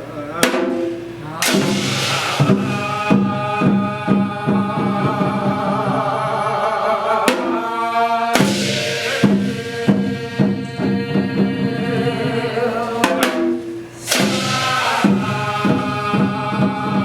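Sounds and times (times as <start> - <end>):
steady drum beats: 0.4 - 17.0
loud crashes: 0.5 - 3.8, 13.1 - 15.8
person chanting and singing: 1.2 - 13.3, 14.1 - 17.0.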